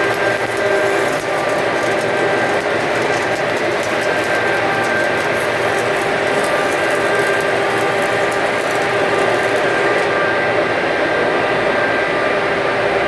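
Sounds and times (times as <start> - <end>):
welding arc crackling: 0.0 - 10.3
machine hum: 0.0 - 10.7.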